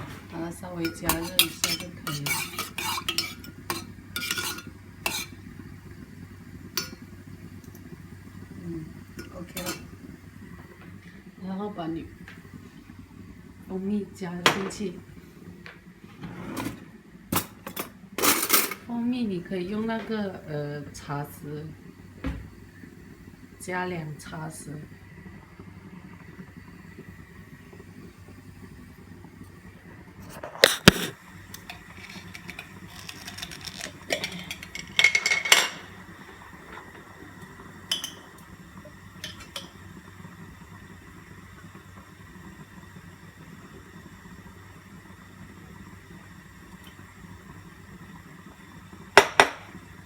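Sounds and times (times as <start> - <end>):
faint steady hum: 0.0 - 50.0
teaspoon clinking against a cup: 0.9 - 5.4, 31.6 - 35.9.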